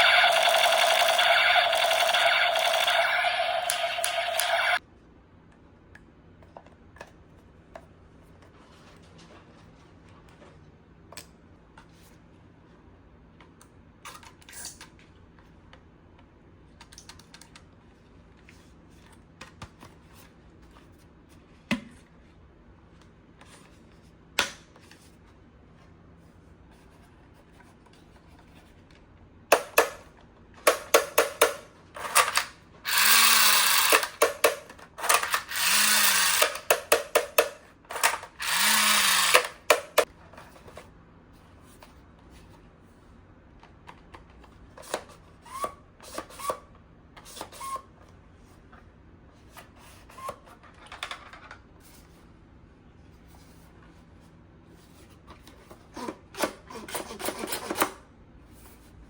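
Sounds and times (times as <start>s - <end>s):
toy blaster clicks: 0.0s - 4.8s, 30.8s - 40.1s
toy blaster rattling bursts: 0.0s - 4.8s, 30.8s - 40.1s.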